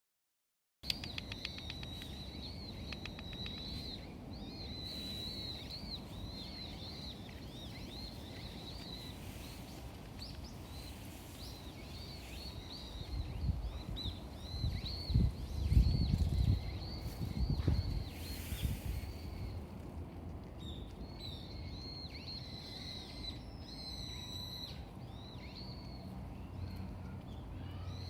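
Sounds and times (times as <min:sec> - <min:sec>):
small birds chirping: 0:00.8 - 0:19.7
low outdoor rumble: 0:02.0 - 0:28.0.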